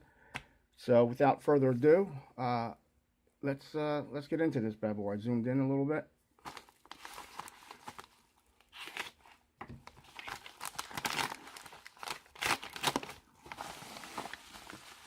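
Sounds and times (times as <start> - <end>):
packaging tearing and crinkling: 6.4 - 15.0.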